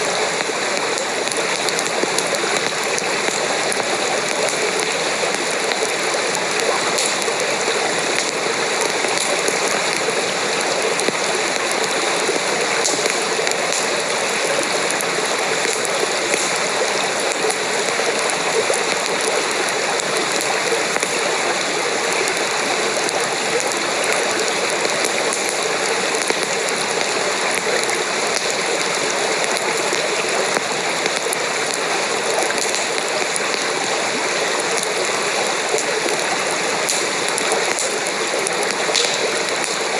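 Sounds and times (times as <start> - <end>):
rushing water: 0.0 - 39.9
faint light ticks: 6.6 - 7.3, 36.9 - 39.8.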